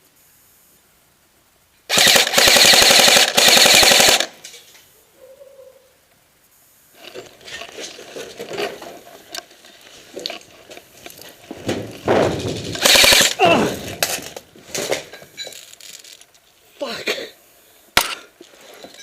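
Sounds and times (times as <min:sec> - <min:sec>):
airsoft guns firing: 0:01.9 - 0:04.4, 0:11.8 - 0:14.3.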